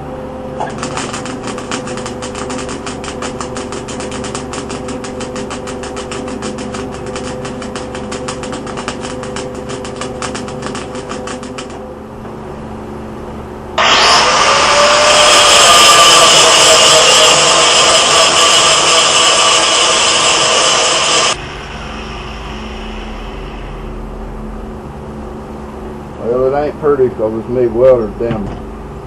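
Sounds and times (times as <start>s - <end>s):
welder steady hum: 0.0s - 29.0s
welder crackling sputter: 0.6s - 11.8s, 13.8s - 21.4s
loud harsh rushing noise: 13.8s - 26.8s.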